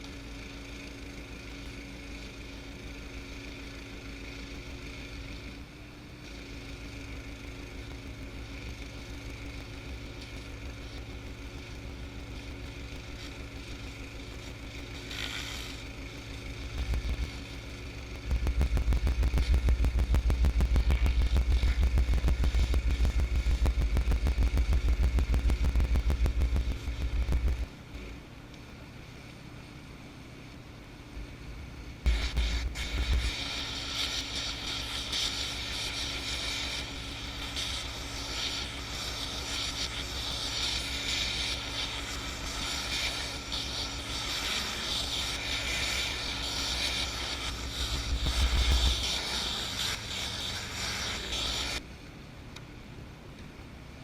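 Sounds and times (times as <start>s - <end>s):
surface cleaner spraying concrete: 0.0s - 28.1s, 32.0s - 51.9s
pressure washer engine running: 0.0s - 29.8s, 30.4s - 51.8s
heavy low rumble: 18.1s - 27.7s.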